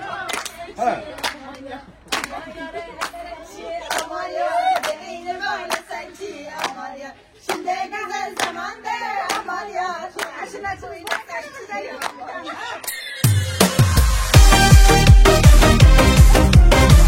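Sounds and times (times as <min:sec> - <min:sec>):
group of voices singing: 0:00.0 - 0:13.2
hand claps: 0:00.3 - 0:00.6, 0:01.2 - 0:02.4, 0:03.9 - 0:04.1, 0:06.6 - 0:06.8, 0:11.0 - 0:11.2.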